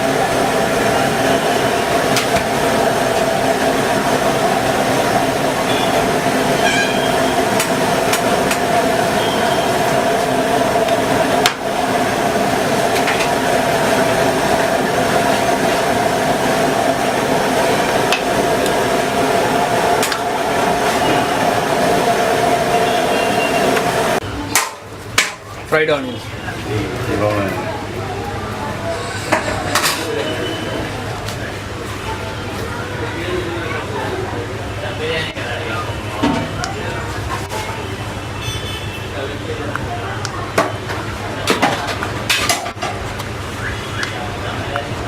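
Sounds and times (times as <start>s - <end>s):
loud mechanical roar: 0.0s - 24.3s.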